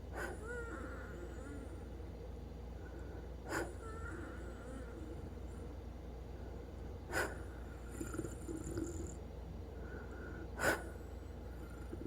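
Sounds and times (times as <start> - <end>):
wheezing breathing: 0.0 - 1.9, 2.7 - 5.5, 7.1 - 12.0
short sharp snorts: 7.1 - 8.1, 10.6 - 11.0.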